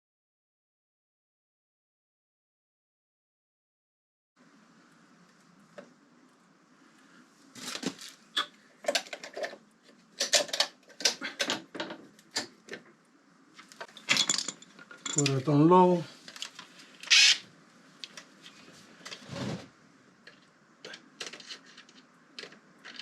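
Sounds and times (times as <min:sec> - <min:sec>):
small metal parts and tools clicking: 0:10.2 - 0:12.8, 0:13.8 - 0:15.5, 0:20.2 - 0:23.0.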